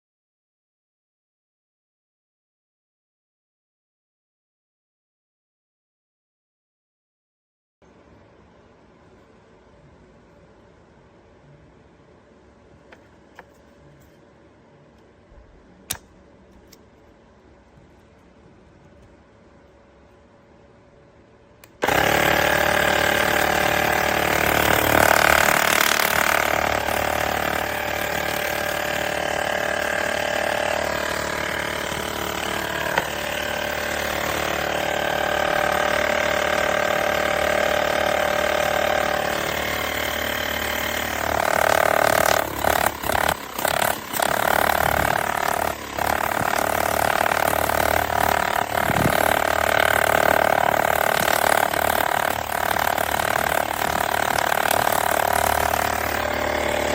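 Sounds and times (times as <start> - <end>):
small air compressor running: 21.8 - 56.9.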